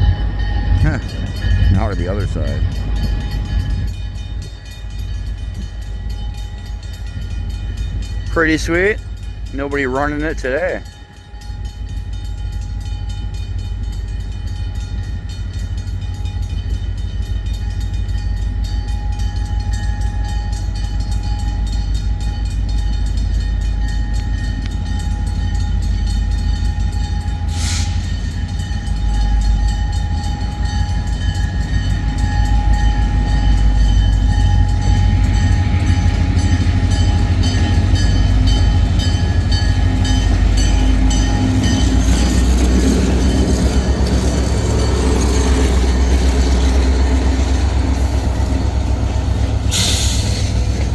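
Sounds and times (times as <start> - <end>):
freight train rumbling: 0.0 - 50.9
wheels clattering on rail: 0.0 - 50.9.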